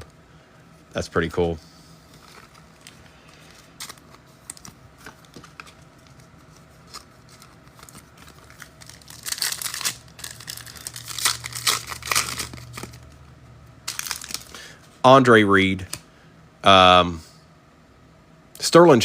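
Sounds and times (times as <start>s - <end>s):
cards being handled: 2.0s - 13.2s, 13.8s - 14.6s
wrapper tearing and crinkling: 2.1s - 13.2s, 13.8s - 14.7s.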